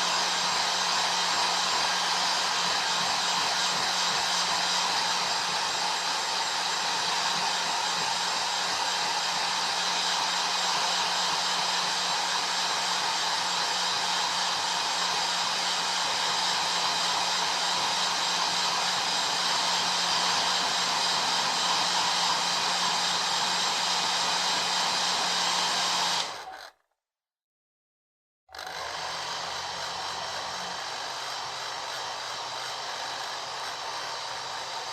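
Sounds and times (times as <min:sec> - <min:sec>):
hair dryer blowing air: 0:00.0 - 0:26.7, 0:28.6 - 0:34.9.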